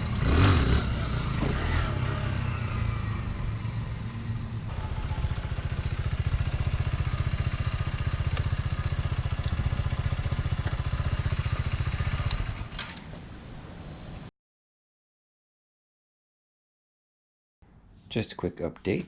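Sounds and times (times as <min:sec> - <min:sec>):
motorcycle engine running: 0:00.0 - 0:12.7.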